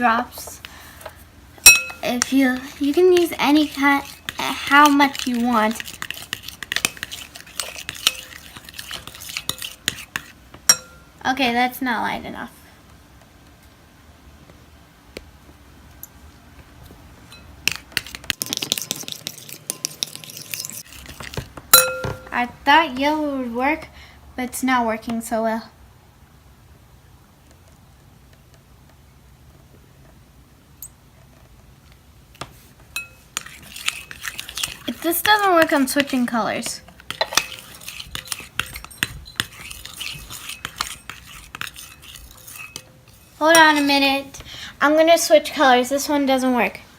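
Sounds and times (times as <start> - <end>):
spoon clinking in a container: 1.6 - 2.3, 3.8 - 10.1, 10.7 - 11.1, 21.8 - 22.3, 37.1 - 42.9, 43.6 - 43.9.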